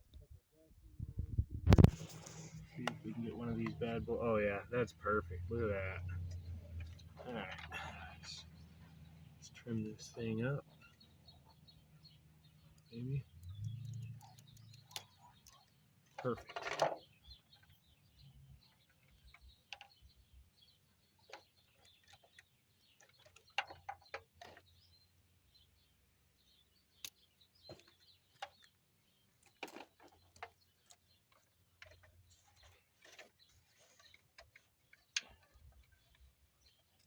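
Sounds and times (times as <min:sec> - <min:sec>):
hands handling engine parts: 0:13.3 - 0:17.8, 0:21.0 - 0:24.8, 0:26.9 - 0:37.0.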